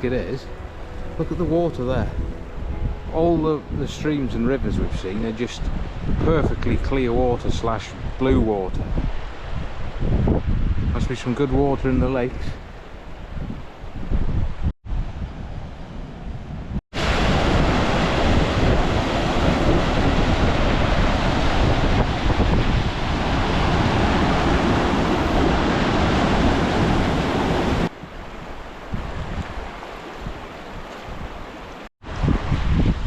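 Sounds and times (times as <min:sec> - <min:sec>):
wind buffeting microphone: 0:00.0 - 0:33.0
fast-flowing river rushing: 0:17.0 - 0:32.9.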